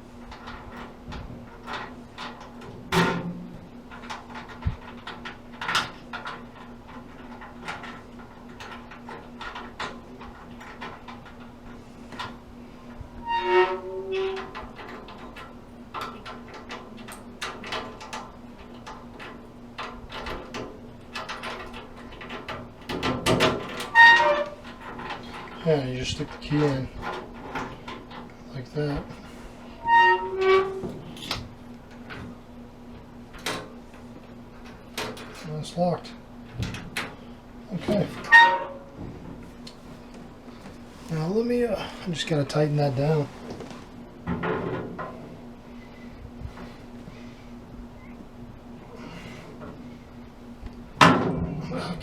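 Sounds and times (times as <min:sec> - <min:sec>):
faint steady hum: 0:00.0 - 0:52.0
metal on metal squeak: 0:13.2 - 0:14.6, 0:23.9 - 0:24.6, 0:29.7 - 0:31.3, 0:37.8 - 0:39.0.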